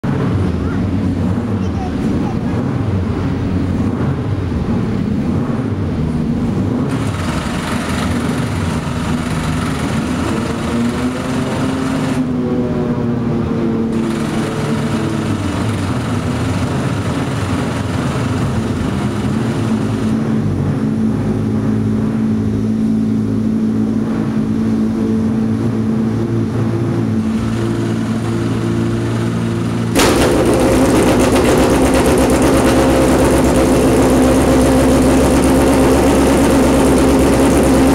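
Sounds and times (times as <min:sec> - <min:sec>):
race car engine idling: 0:13.9 - 0:20.1, 0:27.2 - 0:37.9.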